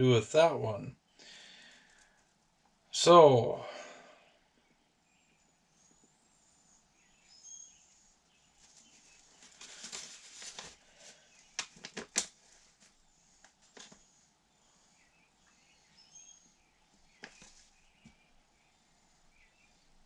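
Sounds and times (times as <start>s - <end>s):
faint bird chirps: 3.5s - 11.6s, 12.9s - 20.0s
rustling: 7.7s - 15.9s, 16.9s - 20.0s.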